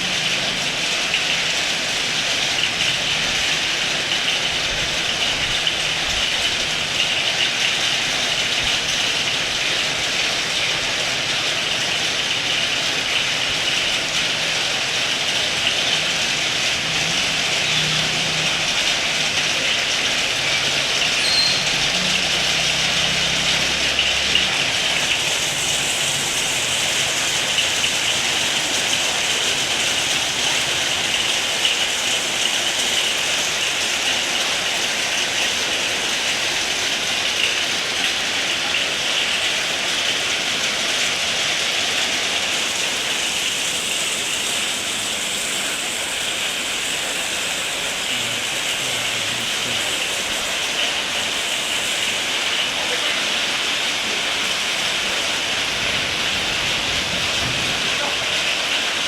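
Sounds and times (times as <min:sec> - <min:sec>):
heavy rain: 0:00.0 - 0:59.0.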